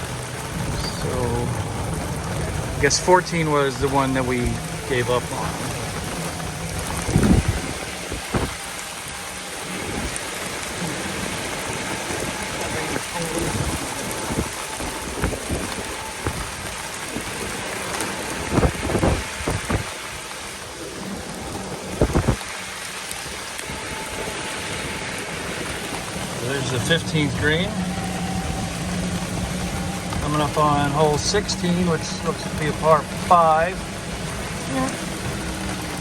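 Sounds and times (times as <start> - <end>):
steady rain falling: 0.0 - 36.0
low thumps: 4.5 - 8.8.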